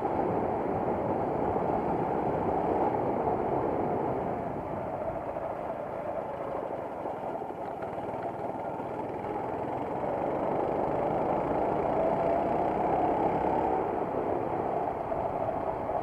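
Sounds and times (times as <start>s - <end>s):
kart engine accelerating: 5.2s - 16.0s.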